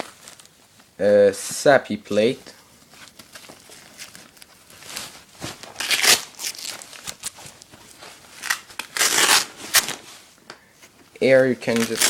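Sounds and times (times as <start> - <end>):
nylon fabric rustling and scraping: 2.7 - 10.4.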